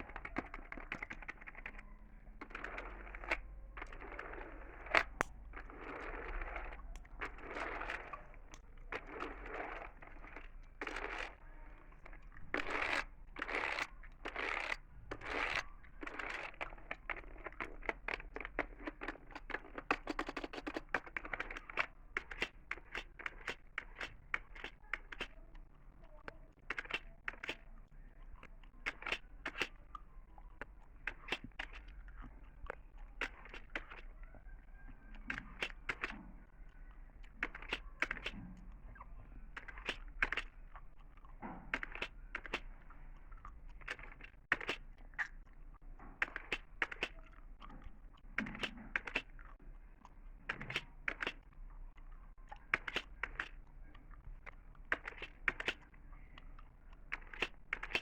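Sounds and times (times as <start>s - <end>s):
computer keys clicking: 0.0s - 11.4s, 12.0s - 36.2s
gum chewing mouth sounds: 0.0s - 58.0s.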